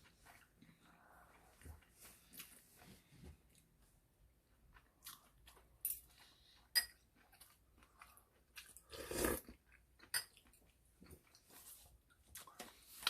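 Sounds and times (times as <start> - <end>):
people chewing: 4.4 - 13.0.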